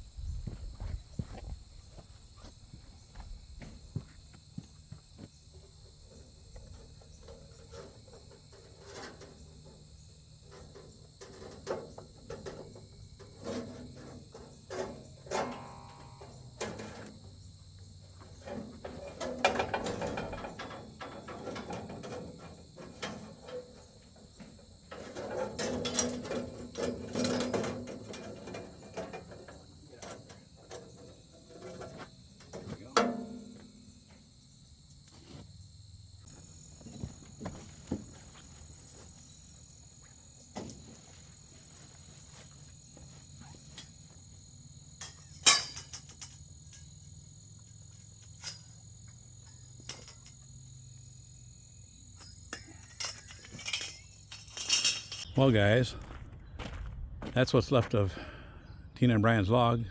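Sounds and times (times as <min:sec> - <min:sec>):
crickets chirring: 0:00.0 - 0:59.9
knocks and rustles of handling: 0:18.0 - 0:33.8, 0:36.2 - 0:55.4.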